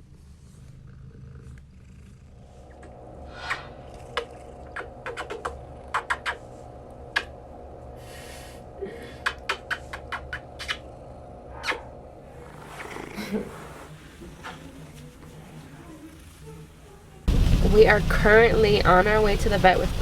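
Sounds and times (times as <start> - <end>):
steady low hum: 1.4 - 12.5, 17.2 - 20.0.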